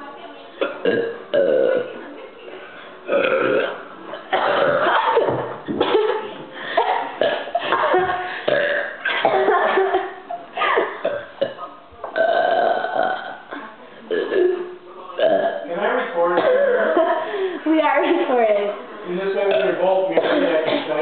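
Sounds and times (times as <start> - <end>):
loud human belches: 0.6 - 2.0, 3.0 - 6.0, 7.1 - 7.7, 8.4 - 9.6, 10.8 - 15.7.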